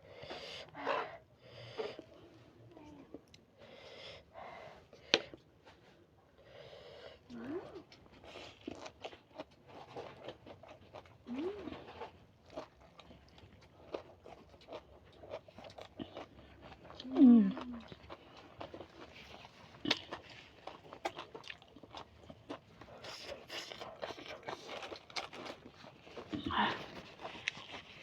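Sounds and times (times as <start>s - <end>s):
chewing and mouth clicks: 7.8s - 28.0s.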